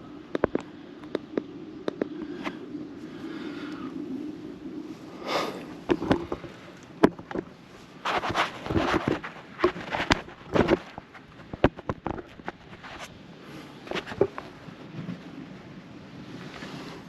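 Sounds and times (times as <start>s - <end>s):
clicks and knocks of handling: 0.3s - 2.6s, 5.8s - 13.1s
rustling: 2.2s - 15.3s.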